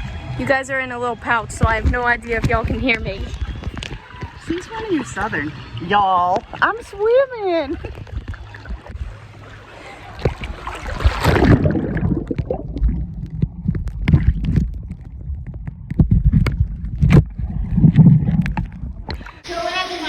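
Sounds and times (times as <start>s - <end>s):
muffled water sloshing: 0.5s - 20.0s
low rumble: 11.2s - 19.2s.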